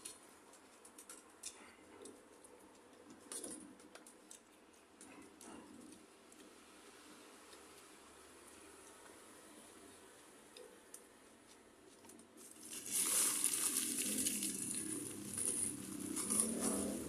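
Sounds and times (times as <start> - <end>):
loud crinkling and rustling: 12.0 - 17.0.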